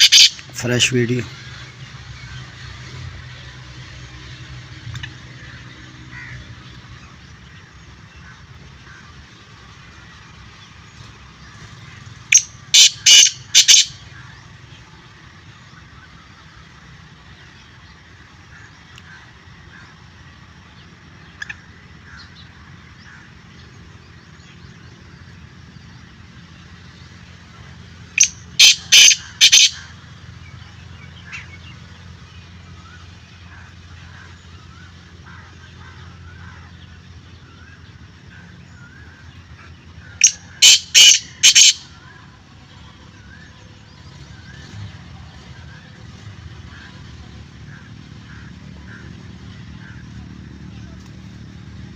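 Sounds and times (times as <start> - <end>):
harsh bird call: 0.0 - 1.7, 12.3 - 14.4, 28.1 - 31.8, 32.7 - 42.4
faint background chirping: 0.0 - 51.9.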